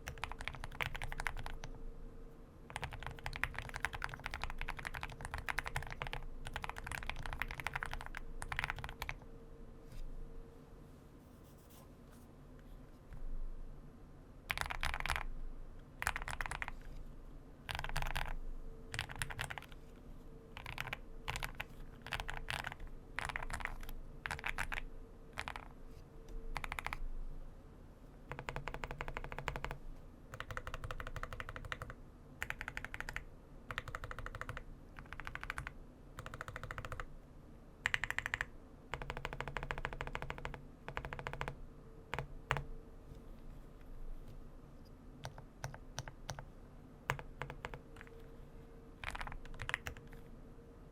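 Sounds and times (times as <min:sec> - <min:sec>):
typing on mechanical keyboard: 0:00.0 - 0:01.8, 0:02.7 - 0:09.2, 0:14.5 - 0:15.3, 0:16.0 - 0:16.9, 0:17.7 - 0:19.8, 0:20.5 - 0:25.7, 0:26.5 - 0:27.0, 0:28.3 - 0:37.1, 0:37.8 - 0:42.7, 0:45.2 - 0:46.5, 0:47.1 - 0:48.2, 0:49.0 - 0:50.2.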